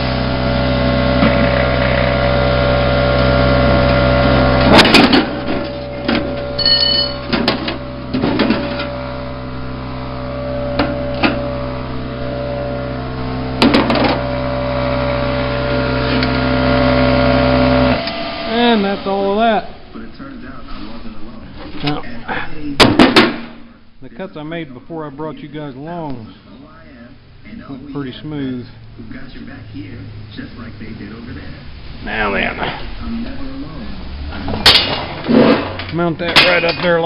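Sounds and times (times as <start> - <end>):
plasma cutter humming: 0.0 - 21.4.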